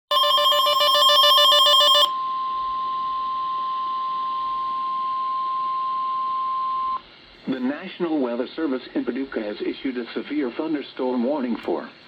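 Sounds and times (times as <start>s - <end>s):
warbling electronic alert: 0.1s - 2.1s
steady warning alarm tone: 0.1s - 2.2s.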